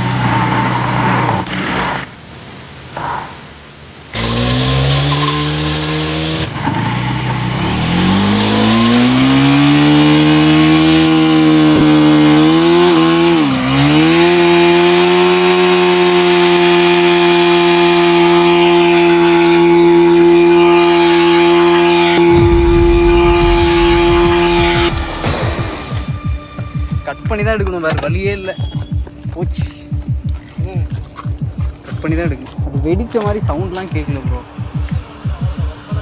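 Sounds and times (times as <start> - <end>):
motorcycle engine revving hard: 4.2 - 26.2.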